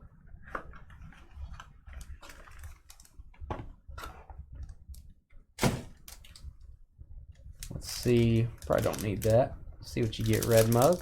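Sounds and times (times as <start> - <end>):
cardboard and plastic rustling: 0.4 - 4.4, 7.5 - 11.0.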